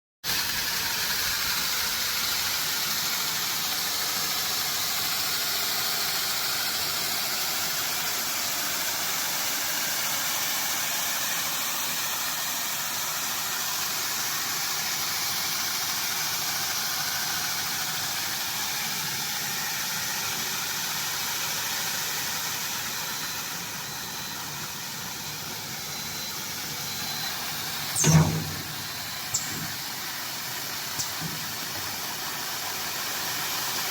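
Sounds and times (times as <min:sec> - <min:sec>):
high-pitched machine noise: 0:21.6 - 0:33.9
loud knock: 0:28.0 - 0:29.8, 0:31.0 - 0:31.5.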